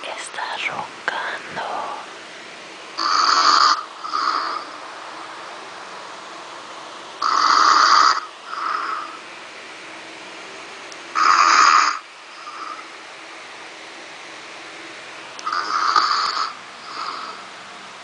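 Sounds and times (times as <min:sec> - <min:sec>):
man snoring: 0:03.0 - 0:04.8, 0:07.2 - 0:09.2, 0:11.1 - 0:12.9, 0:15.5 - 0:17.4.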